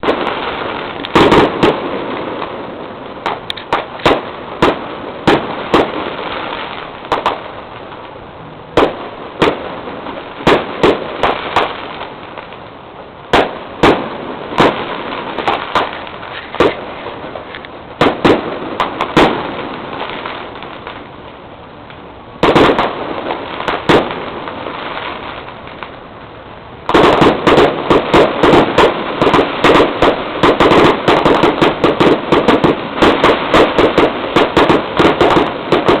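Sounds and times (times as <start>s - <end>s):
fireworks bangs: 0.0s - 36.0s
steady background hiss: 0.0s - 36.0s.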